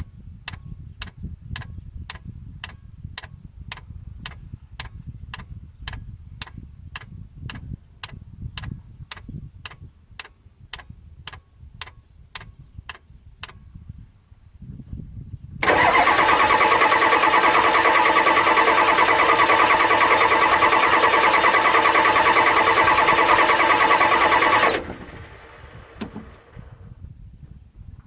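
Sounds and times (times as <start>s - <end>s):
diesel engine starter cranking: 15.6s - 26.9s.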